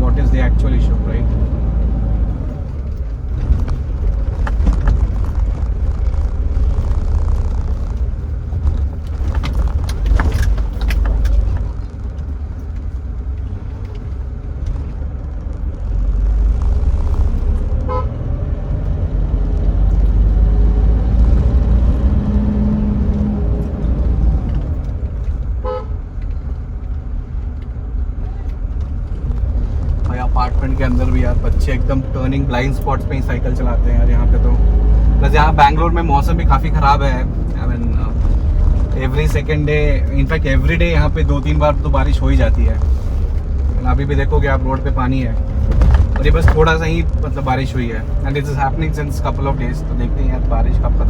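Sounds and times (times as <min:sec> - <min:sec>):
car engine and road rumble: 0:00.0 - 0:51.0
car horn toots: 0:17.8 - 0:18.2, 0:25.6 - 0:26.0.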